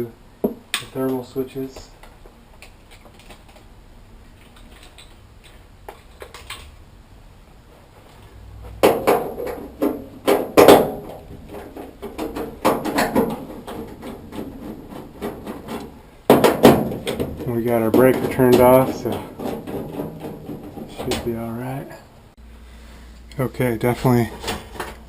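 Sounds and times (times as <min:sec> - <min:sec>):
metallic knocks and clatter: 0:04.3 - 0:06.8, 0:08.6 - 0:21.8.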